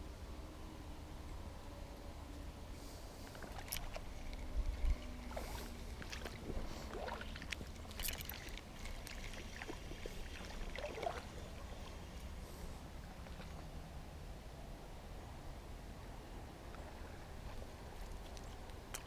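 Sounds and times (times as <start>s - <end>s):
water splashing and sloshing: 3.0s - 14.4s, 16.8s - 19.0s
wind rumble on microphone: 3.4s - 7.7s.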